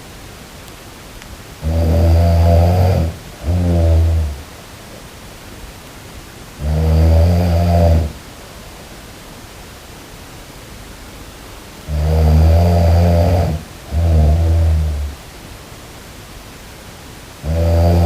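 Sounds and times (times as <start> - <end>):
faint steady hiss: 0.0 - 18.0
person snoring: 1.6 - 4.4, 6.6 - 8.2, 11.9 - 15.2, 17.4 - 18.0.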